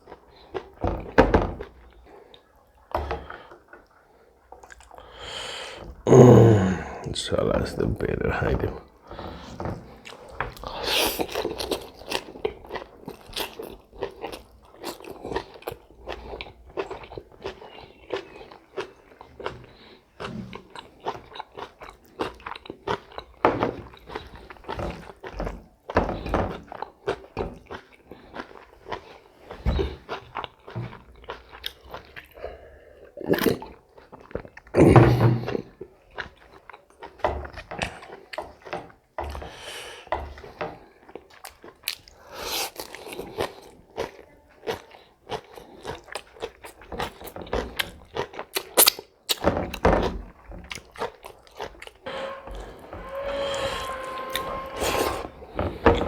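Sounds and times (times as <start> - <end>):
person chewing and biting food: 44.7 - 49.4.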